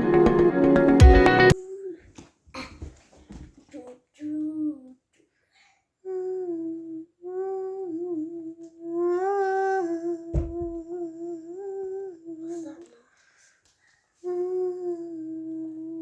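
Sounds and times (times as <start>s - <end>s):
person humming: 0.0s - 2.1s, 6.1s - 12.8s, 14.2s - 16.0s
low thump: 10.3s - 10.8s.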